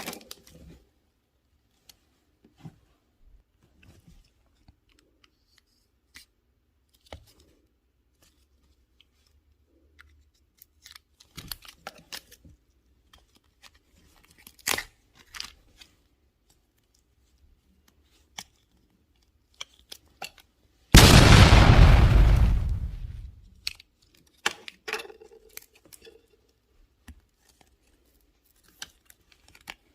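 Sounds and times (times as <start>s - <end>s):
faint clicks and crunching: 21.0s - 23.4s
loud explosion blast: 21.0s - 23.4s.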